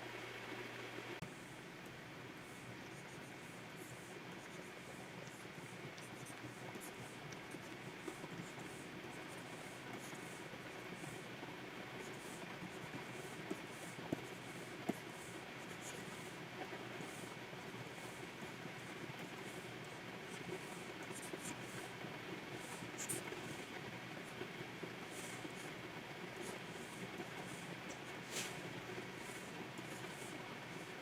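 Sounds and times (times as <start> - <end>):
stylus scratching on pen tablet: 2.5 - 31.0
steady hiss: 26.4 - 30.9.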